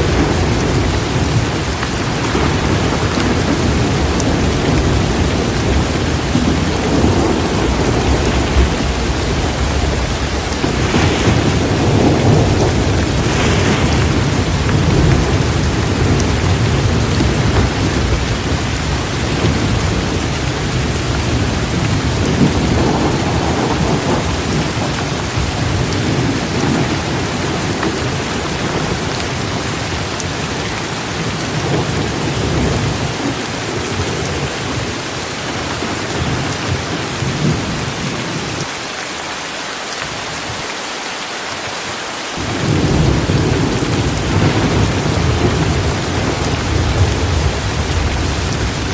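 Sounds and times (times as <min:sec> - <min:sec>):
thunder rumbling: 0:00.0 - 0:38.6, 0:42.4 - 0:48.9
heavy rain pouring: 0:00.0 - 0:48.9.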